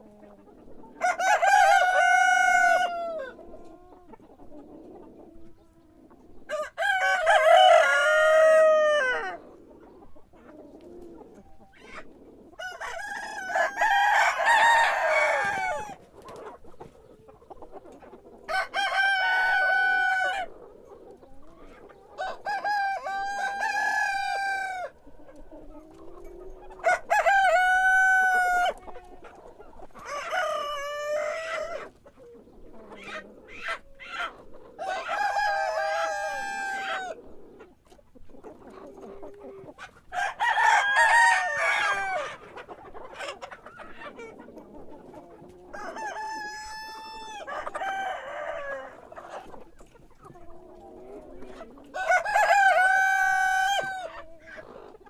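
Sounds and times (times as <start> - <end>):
hens clucking: 0.0 - 55.0
roosters crowing: 0.9 - 3.4, 6.4 - 9.4, 12.5 - 16.5, 18.4 - 20.5, 22.1 - 25.0, 26.5 - 28.9, 29.8 - 31.9, 33.1 - 37.2, 40.1 - 42.4, 45.6 - 49.4, 51.5 - 54.2.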